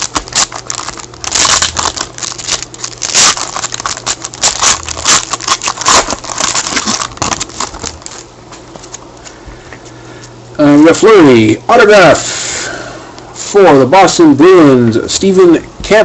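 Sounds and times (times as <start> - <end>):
plastic wrapper crinkling: 0.0 - 9.1.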